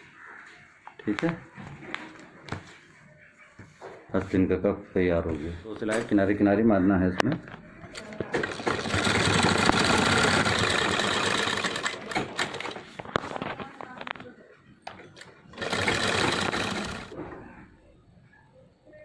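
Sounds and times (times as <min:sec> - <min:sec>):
sewing machine stitching: 0:08.3 - 0:13.0, 0:15.2 - 0:17.2.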